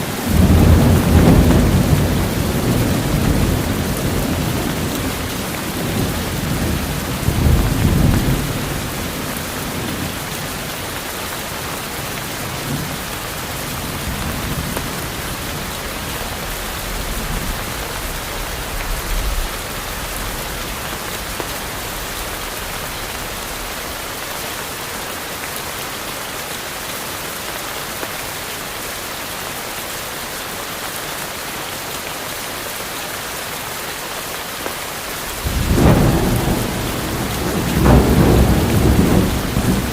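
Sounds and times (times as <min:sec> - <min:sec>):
steady rain: 0:00.0 - 0:39.9
thunder rumbling: 0:00.2 - 0:10.7, 0:35.2 - 0:39.9.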